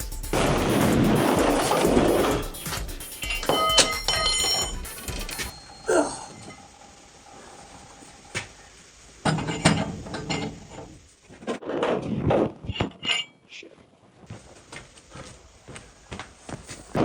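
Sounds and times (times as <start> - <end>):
steel clanking and knocking: 0.4 - 5.8, 9.2 - 11.0.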